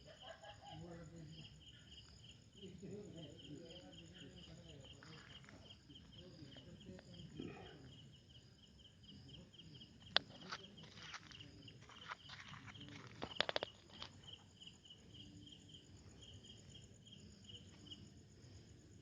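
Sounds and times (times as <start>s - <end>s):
high insect chirping: 0.0s - 19.0s.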